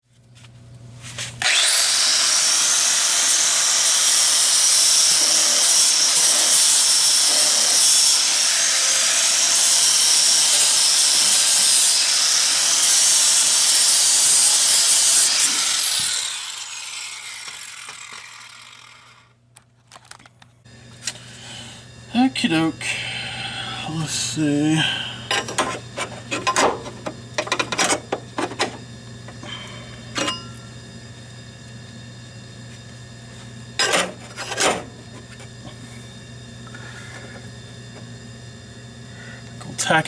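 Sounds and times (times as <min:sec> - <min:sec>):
power grinder grinding: 0:01.4 - 0:19.4.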